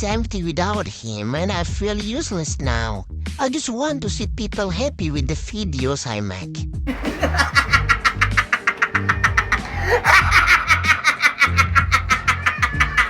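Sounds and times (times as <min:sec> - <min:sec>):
background music with bass line: 0:06.8 - 0:13.0
rapidly pulsing laugh effect: 0:06.9 - 0:13.0.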